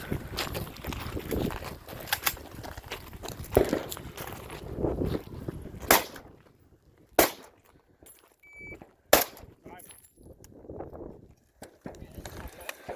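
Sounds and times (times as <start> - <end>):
gunshots: 5.9 - 6.2, 7.2 - 7.6, 9.1 - 9.5.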